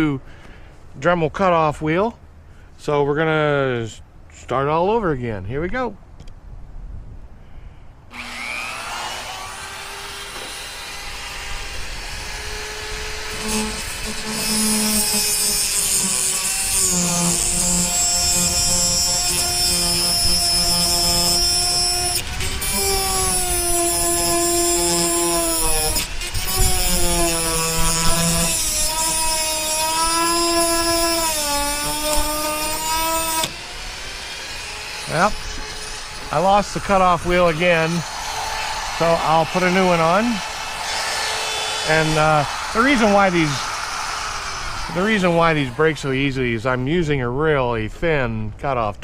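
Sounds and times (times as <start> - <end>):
rotary tool cutting screws: 8.1 - 46.3.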